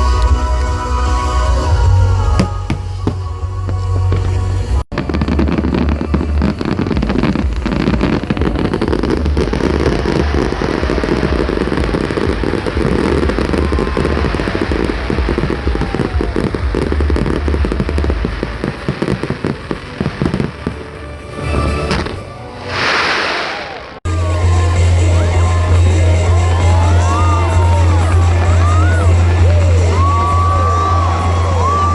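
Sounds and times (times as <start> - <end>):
low booming rumble: 2.1 - 20.7
fireworks crackling and popping: 2.2 - 24.0, 25.8 - 31.9
fireworks whistling: 2.3 - 24.0.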